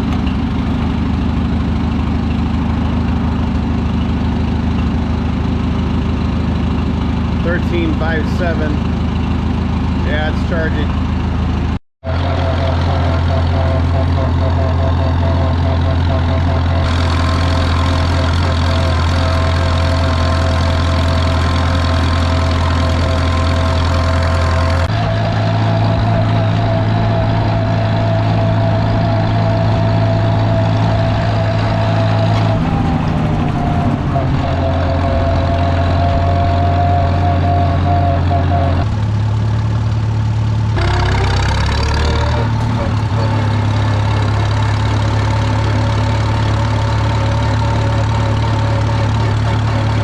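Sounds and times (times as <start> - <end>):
tractor engine running: 0.0 - 50.0.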